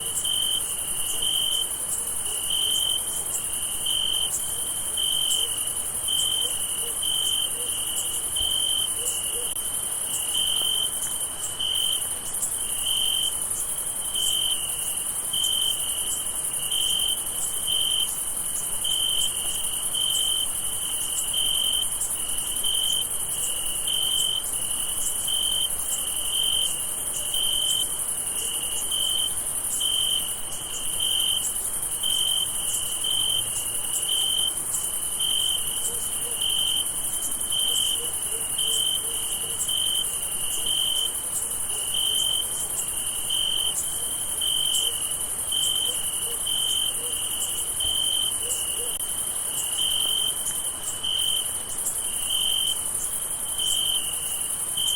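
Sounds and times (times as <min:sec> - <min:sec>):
cricket chirping: 0:00.0 - 0:54.9
high-pitched insect chorus: 0:00.0 - 0:54.9.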